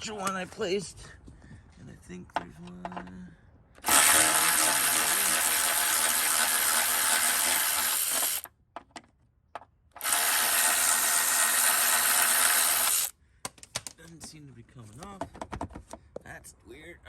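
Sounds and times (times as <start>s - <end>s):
handheld power tool running: 3.8s - 8.5s, 10.0s - 13.1s.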